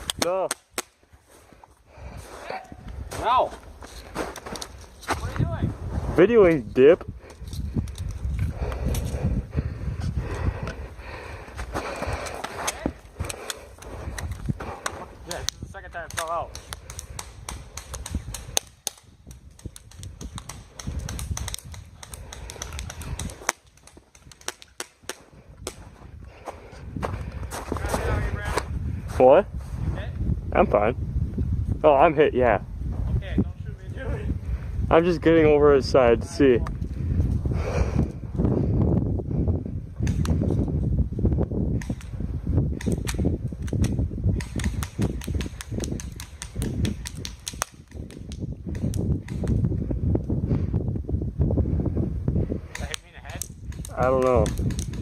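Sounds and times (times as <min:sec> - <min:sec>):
sharp clicks and ticks: 0:00.0 - 0:01.0, 0:07.3 - 0:09.3, 0:12.0 - 0:25.8, 0:40.0 - 0:40.5, 0:41.8 - 0:50.4, 0:52.7 - 0:55.0.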